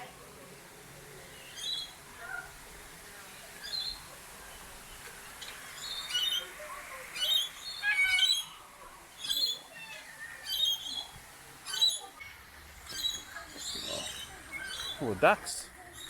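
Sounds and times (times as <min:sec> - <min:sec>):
birds squawking: 0:07.2 - 0:08.6, 0:09.2 - 0:16.0.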